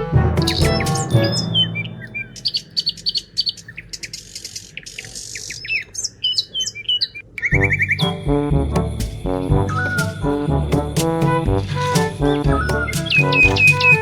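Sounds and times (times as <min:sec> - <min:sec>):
background music: 0:00.0 - 0:02.7, 0:07.5 - 0:14.0
birds chirping: 0:00.4 - 0:14.0.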